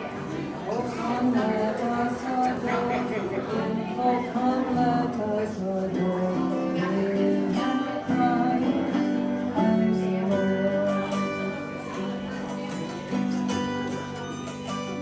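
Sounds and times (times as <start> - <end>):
acoustic guitar melody: 0.0 - 15.0.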